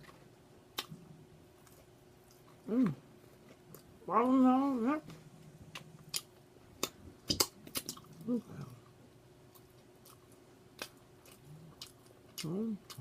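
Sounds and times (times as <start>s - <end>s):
person chewing wetly: 5.6s - 13.0s.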